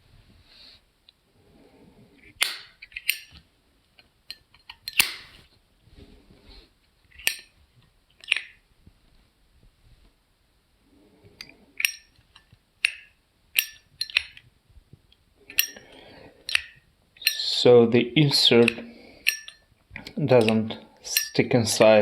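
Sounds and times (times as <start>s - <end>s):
soft rustling: 8.8s - 10.2s.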